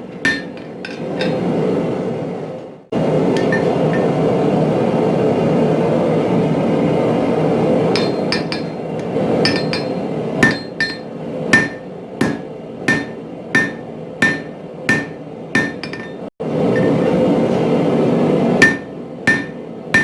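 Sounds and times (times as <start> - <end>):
hammer striking steel on anvil: 0.2 - 1.4, 3.3 - 4.2, 8.0 - 8.8, 9.4 - 17.2, 18.6 - 20.0.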